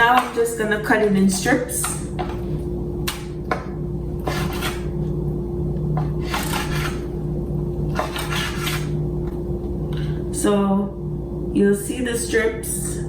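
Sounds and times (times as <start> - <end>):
steady low hum: 0.0 - 13.0
knife slicing raw meat: 4.3 - 4.9, 6.2 - 7.1, 8.0 - 8.9.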